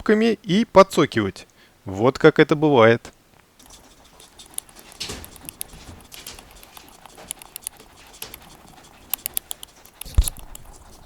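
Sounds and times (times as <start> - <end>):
rabbit grinding its teeth: 3.6 - 11.0.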